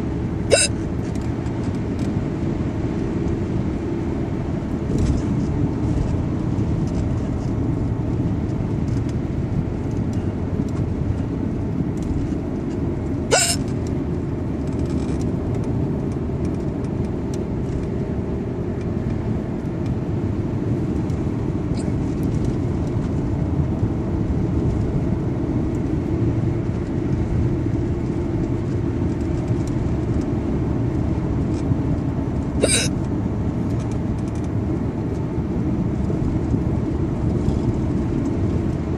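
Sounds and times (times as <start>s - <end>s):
steady low rumble: 0.0s - 38.9s
person hiccuping: 0.5s - 0.8s, 13.3s - 13.6s, 32.6s - 33.0s.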